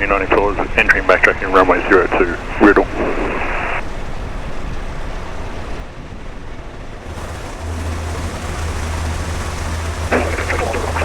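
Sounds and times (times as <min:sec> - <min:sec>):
propeller engine drone: 0:00.0 - 0:11.0
wind-like rushing noise: 0:00.4 - 0:07.4.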